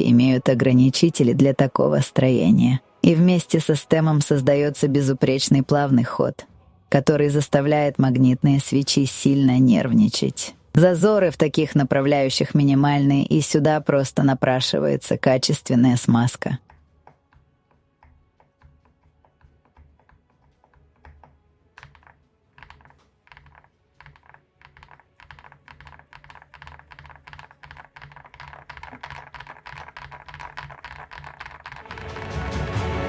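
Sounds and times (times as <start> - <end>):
mechanical keyboard typing: 18.0 - 32.6.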